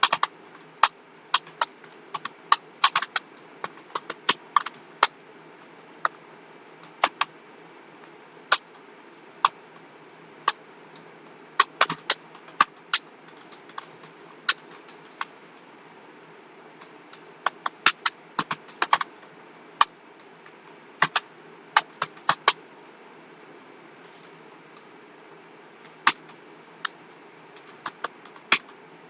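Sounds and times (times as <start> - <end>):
keyboard typing: 0.0 - 5.1, 6.8 - 7.3, 11.6 - 15.3, 16.8 - 22.6, 27.6 - 28.8
low background hiss: 0.0 - 29.0.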